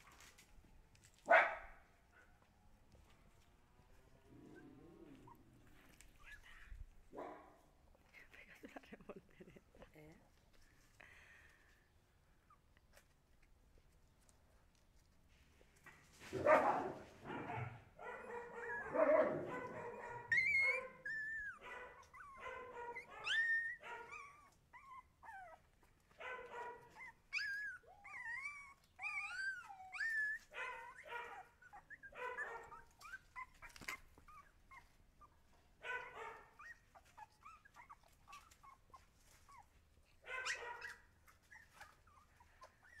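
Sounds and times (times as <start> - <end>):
puppies yipping and whimpering: 5.1 - 6.8, 20.3 - 25.8, 26.9 - 35.3, 36.5 - 39.8, 40.4 - 43.0.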